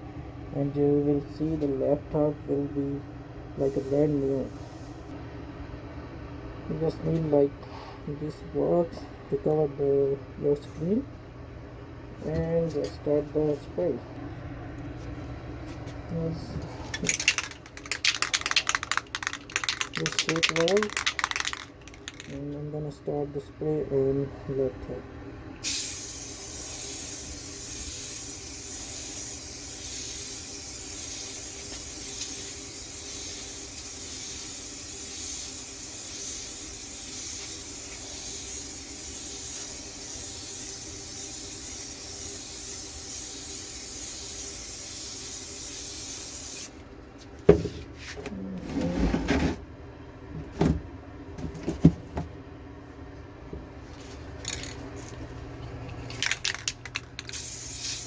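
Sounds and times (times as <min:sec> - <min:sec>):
aerosol spray hissing: 0:03.6 - 0:05.1, 0:25.6 - 0:46.7, 0:57.3 - 0:58.0
handling noises: 0:16.9 - 0:22.4.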